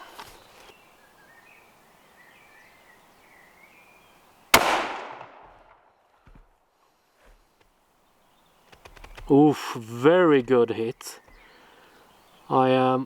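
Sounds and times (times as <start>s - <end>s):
rifle shot: 4.6s - 5.8s.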